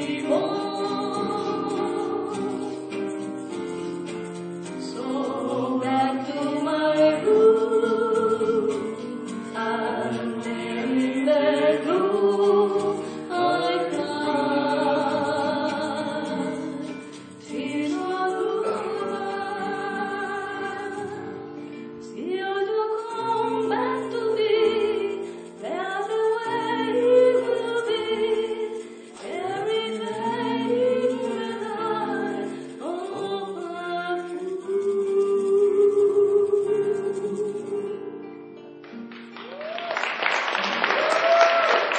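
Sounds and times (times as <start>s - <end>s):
choir singing: 5.0s - 16.0s.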